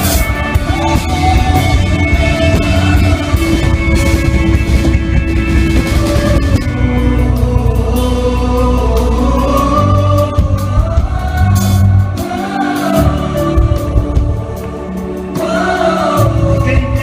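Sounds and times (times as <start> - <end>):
voices singing: 0.0 - 4.6, 5.6 - 17.0
drum and cymbal hits: 0.0 - 8.3
bass: 0.0 - 17.0.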